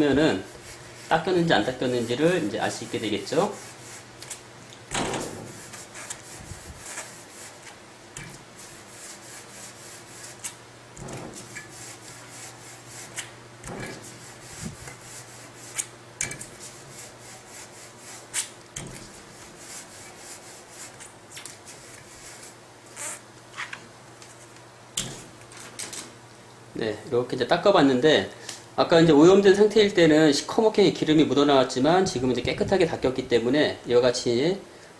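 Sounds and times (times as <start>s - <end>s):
cloth rubbing brake rotor: 0.0s - 4.5s, 5.2s - 24.6s.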